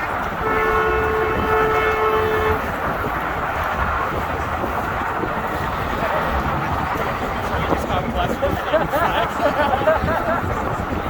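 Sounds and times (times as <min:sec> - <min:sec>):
truck horn: 0:00.0 - 0:03.0
passing highway traffic: 0:00.0 - 0:11.0.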